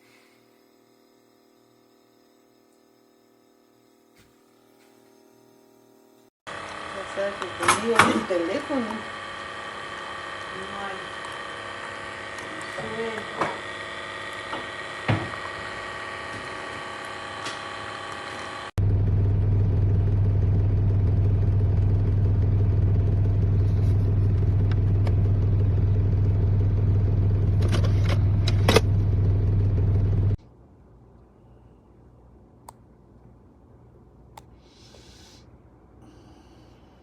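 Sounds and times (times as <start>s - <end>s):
steady whine of held tones: 0.0s - 18.8s
low mechanical hum: 0.0s - 37.0s.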